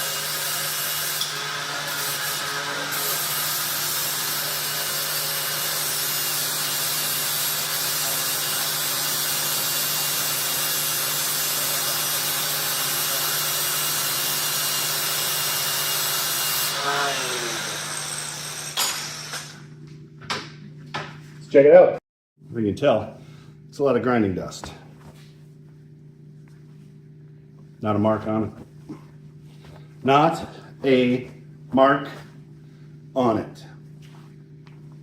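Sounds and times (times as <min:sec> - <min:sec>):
grinder grinding metal: 0:00.0 - 0:19.7.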